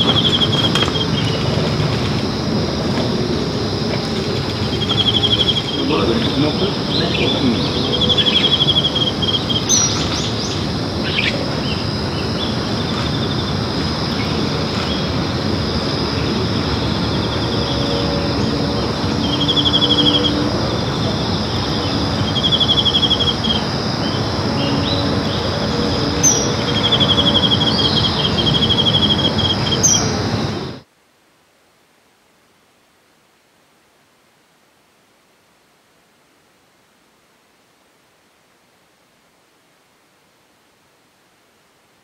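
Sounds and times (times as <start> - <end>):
trilled bird calls: 0.0 - 2.4, 3.2 - 15.2, 16.1 - 30.6
high-pitched whine: 0.0 - 30.9
steady outdoor hiss: 0.0 - 42.0.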